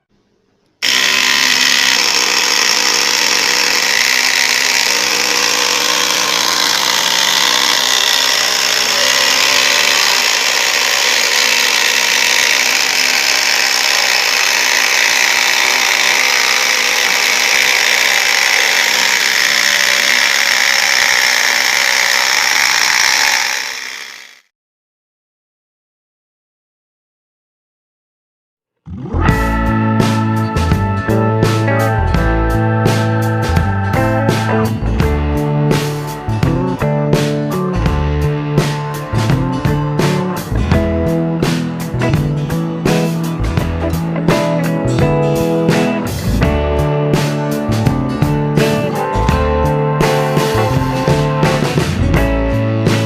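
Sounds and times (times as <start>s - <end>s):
chainsaw running with motor whine: 0.8s - 24.5s, 48.5s - 52.0s.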